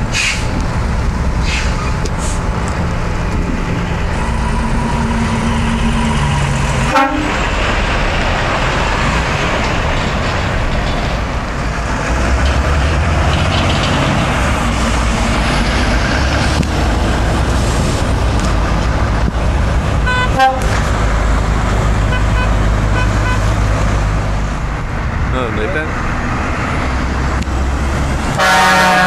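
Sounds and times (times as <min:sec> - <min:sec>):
heavy trucks passing: 0:00.0 - 0:29.0
air horn blast: 0:06.8 - 0:07.4, 0:20.0 - 0:20.8, 0:22.1 - 0:23.5, 0:28.3 - 0:29.0.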